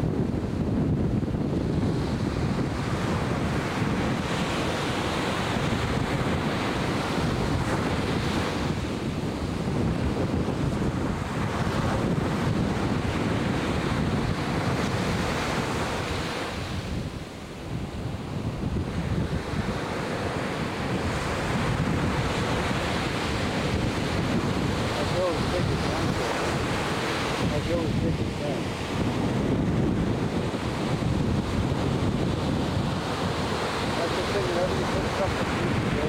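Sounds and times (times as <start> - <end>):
ocean surf washing in: 0.0 - 36.0
wind buffeting microphone: 0.0 - 36.0.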